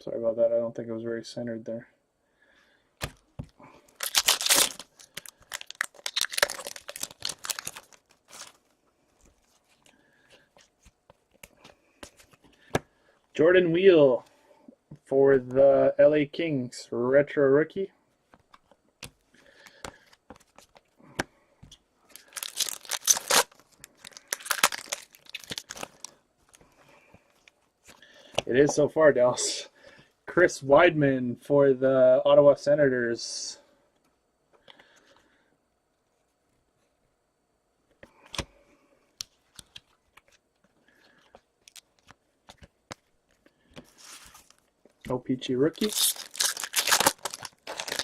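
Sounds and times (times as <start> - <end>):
wrapper tearing open: 3.9 - 8.6, 22.1 - 26.2, 41.6 - 42.1, 45.6 - 48.0.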